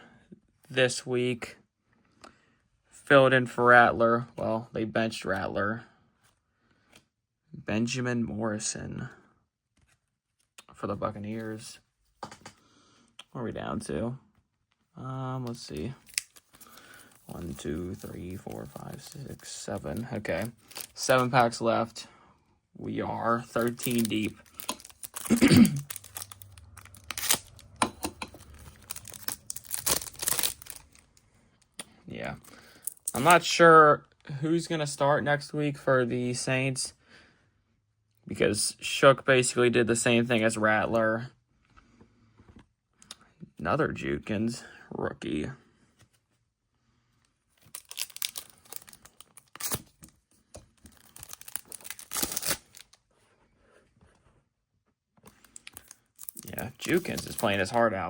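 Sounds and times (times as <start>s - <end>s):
foil pack tearing and crinkling: 16.0s - 21.5s, 23.2s - 31.1s, 47.6s - 50.0s, 50.8s - 53.0s, 55.4s - 57.8s.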